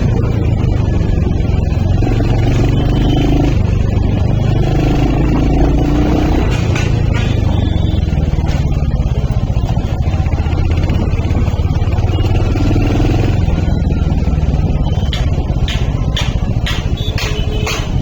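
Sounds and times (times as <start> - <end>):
motorcycle engine thumping: 3.6 - 12.5, 13.3 - 18.0.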